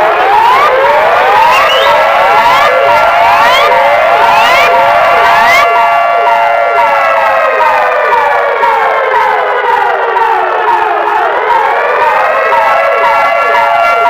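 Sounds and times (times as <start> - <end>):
electronic alarm siren sweeps: 0.0 - 14.0.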